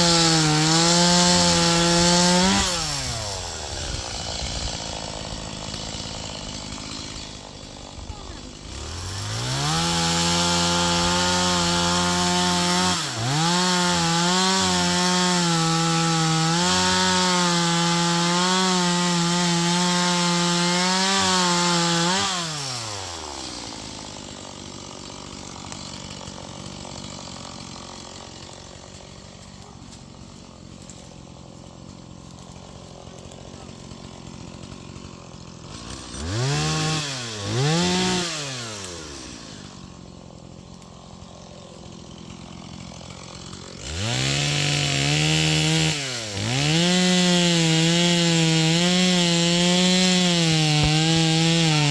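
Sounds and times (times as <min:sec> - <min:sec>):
chainsaw cutting through log: 0:00.0 - 0:51.9.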